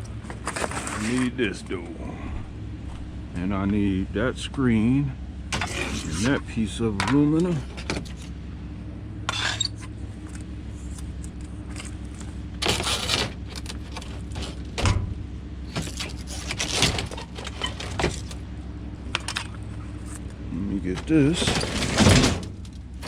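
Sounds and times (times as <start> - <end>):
scrap metal clanking and rattling: 0.0 - 1.4, 5.5 - 8.4, 11.7 - 18.4, 20.8 - 23.0
vehicle engine idling: 0.0 - 21.5.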